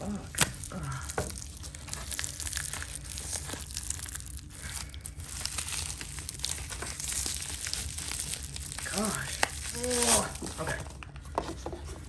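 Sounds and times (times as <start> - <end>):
packing crinkling: 0.0 - 11.6
cardboard box cut and torn: 9.1 - 10.8.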